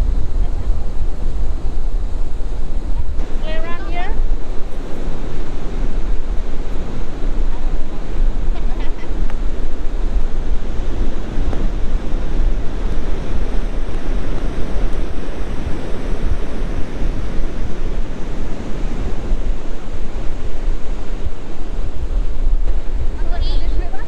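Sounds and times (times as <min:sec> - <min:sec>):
ocean surf washing: 0:00.0 - 0:24.0
wind buffeting microphone: 0:00.0 - 0:24.0.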